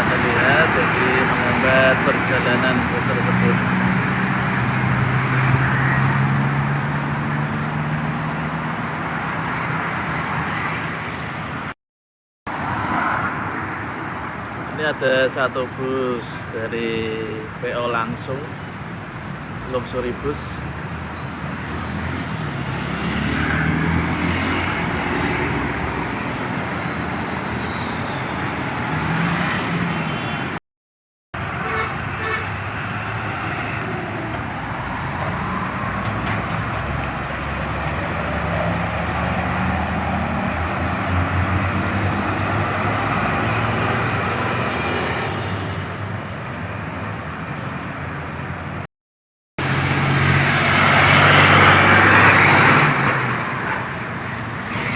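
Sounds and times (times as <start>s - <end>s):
heavy diesel engines rumbling: 0.0s - 9.4s, 31.4s - 48.8s
vehicle horn toots: 31.6s - 32.6s.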